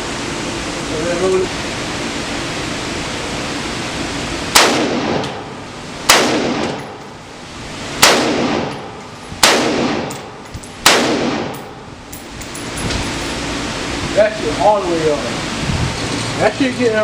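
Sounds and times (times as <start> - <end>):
gunshots with echoing decay: 4.6 - 5.4, 6.1 - 7.0, 8.0 - 11.8.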